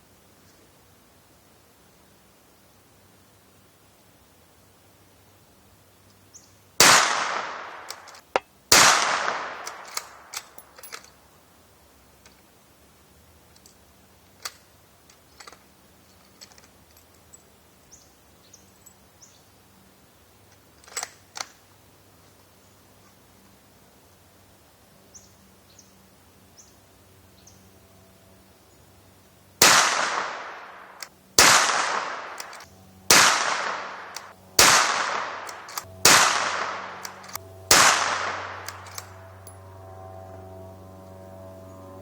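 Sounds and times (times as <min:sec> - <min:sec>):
rifle shots with long echo: 0:06.8 - 0:10.9, 0:29.6 - 0:39.2
sharp rifle bolt clicks: 0:06.8 - 0:11.2, 0:13.5 - 0:17.2, 0:20.5 - 0:21.6, 0:29.6 - 0:39.2.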